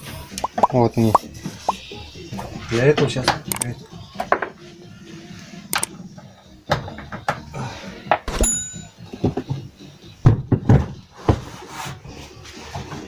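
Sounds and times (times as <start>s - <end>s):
knocks and clicks of parcel shelf: 9.2s - 11.5s.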